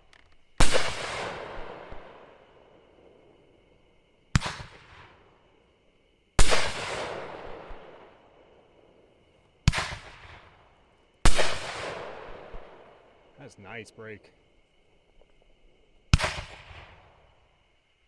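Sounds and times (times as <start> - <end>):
firework bangs with rumbling echo: 9.7 - 10.6, 16.1 - 17.2.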